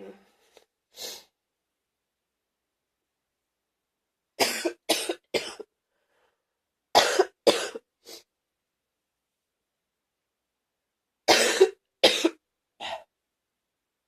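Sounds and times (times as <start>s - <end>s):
person coughing wetly: 4.4s - 5.7s, 7.0s - 7.8s, 11.3s - 13.1s.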